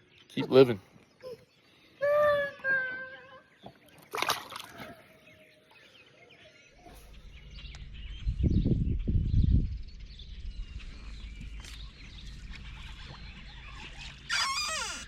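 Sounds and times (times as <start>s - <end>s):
birds chirping: 0.0s - 15.0s
wind rumbling on microphone: 6.8s - 15.0s.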